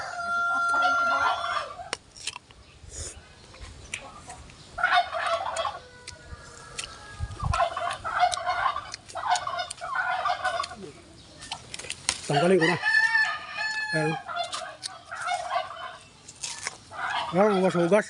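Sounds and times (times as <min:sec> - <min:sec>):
poultry calling: 0:04.1 - 0:11.6, 0:12.3 - 0:18.0.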